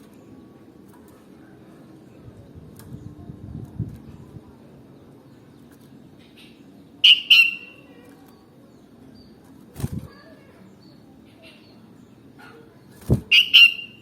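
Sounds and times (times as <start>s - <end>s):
bird giving sharp calls: 6.4s - 7.9s, 13.2s - 14.0s.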